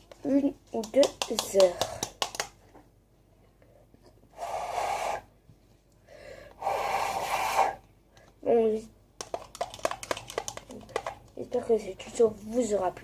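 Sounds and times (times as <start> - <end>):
person breathing loudly: 6.0 - 8.3.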